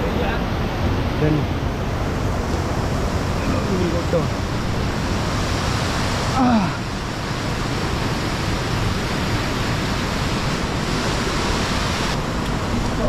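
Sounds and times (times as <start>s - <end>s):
waterfall rushing: 0.0s - 13.0s.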